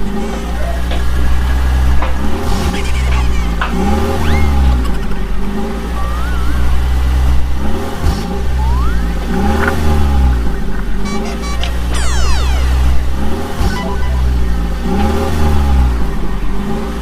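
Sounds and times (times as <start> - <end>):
vehicle engine revving: 0.0 - 17.0
thin whistle-like tones: 5.9 - 7.2, 8.5 - 9.4.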